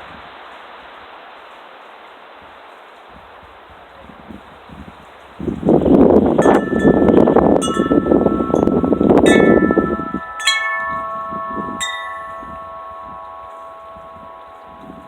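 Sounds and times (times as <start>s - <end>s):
wind rushing on microphone: 0.0s - 1.1s, 2.3s - 15.0s
wind chimes ringing: 6.4s - 15.0s.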